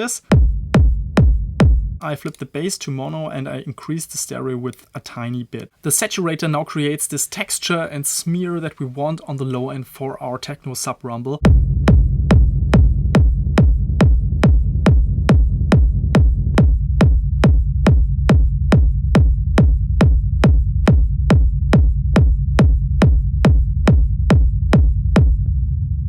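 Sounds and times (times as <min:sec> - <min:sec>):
sub-bass rumble: 0:00.3 - 0:02.0, 0:11.4 - 0:26.0
techno kick drum: 0:00.3 - 0:02.0, 0:11.4 - 0:25.6.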